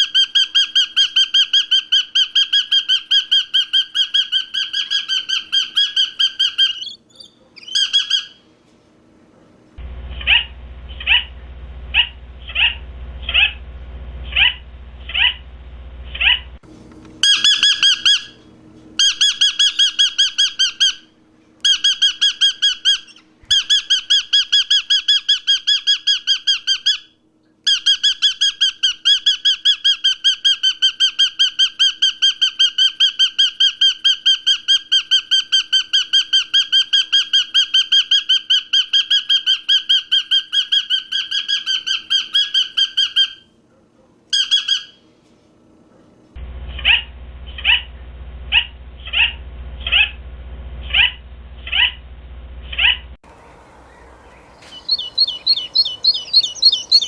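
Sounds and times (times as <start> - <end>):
bird calling harsh notes: 0.0 - 8.4, 17.2 - 18.4, 19.0 - 27.0, 53.2 - 57.0.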